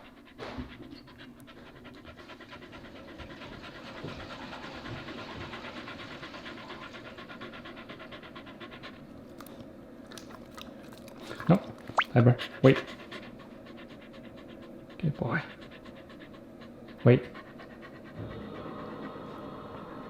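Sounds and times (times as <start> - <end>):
dog panting: 0.0 - 20.0.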